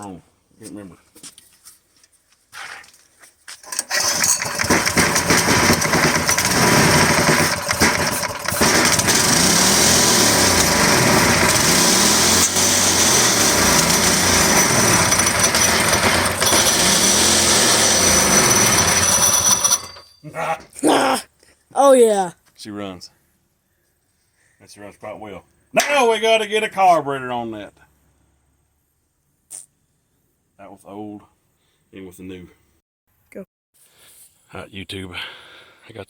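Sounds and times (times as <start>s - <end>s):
small engine starting and running: 3.6s - 20.2s.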